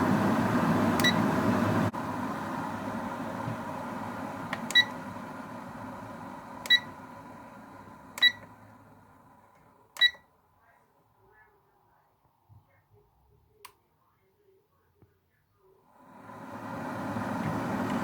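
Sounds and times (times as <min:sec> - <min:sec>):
boiled water rushing: 0:00.0 - 0:08.7, 0:16.0 - 0:18.0
electric kettle beeping: 0:00.0 - 0:09.2, 0:09.9 - 0:10.2, 0:16.0 - 0:18.0.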